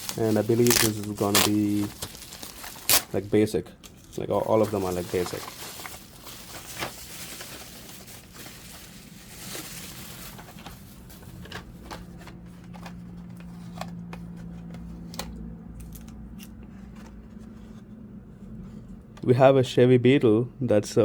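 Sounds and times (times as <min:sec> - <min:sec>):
packaging rustling and crinkling: 0:00.0 - 0:14.9.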